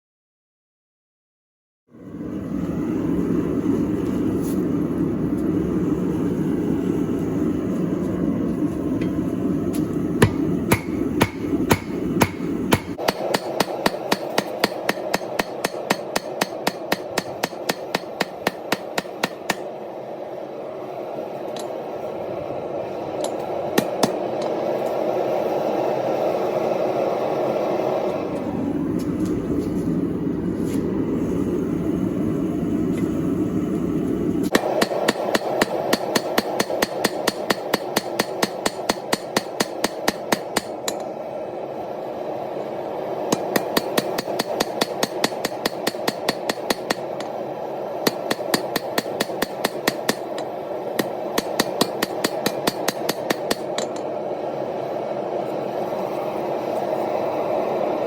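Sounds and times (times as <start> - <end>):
steady rushing noise: 1.9 - 58.0
hammer striking steel on anvil: 10.2 - 19.7, 23.2 - 24.6, 34.5 - 41.1, 43.3 - 47.3, 48.0 - 54.1.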